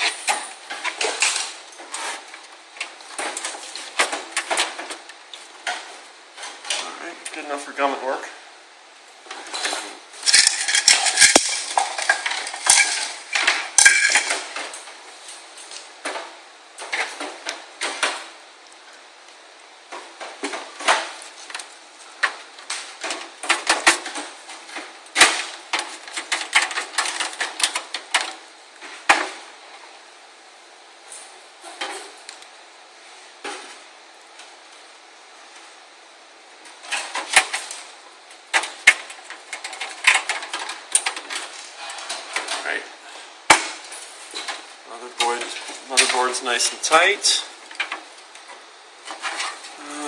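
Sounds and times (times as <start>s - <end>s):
screws and metal parts clinking: 9.5s - 14.4s.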